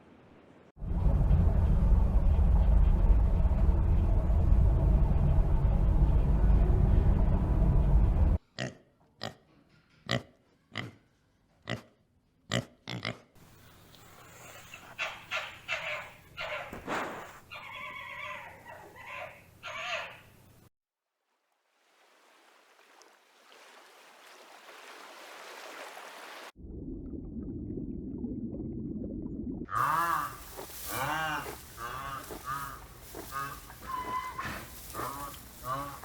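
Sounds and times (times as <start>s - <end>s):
loud low rumble: 0.8s - 8.4s, 26.6s - 33.9s.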